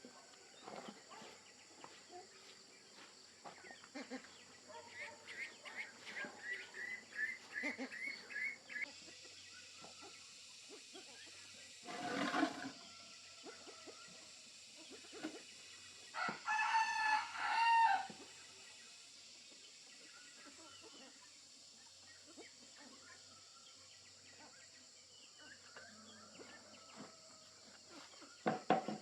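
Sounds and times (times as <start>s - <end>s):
rustling: 11.8s - 12.8s
rooster crowing: 16.2s - 18.2s, 25.7s - 27.8s.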